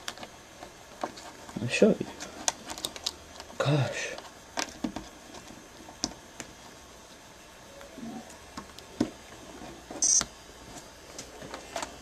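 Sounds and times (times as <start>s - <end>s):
faint handling noise with clicks: 0.0s - 7.2s.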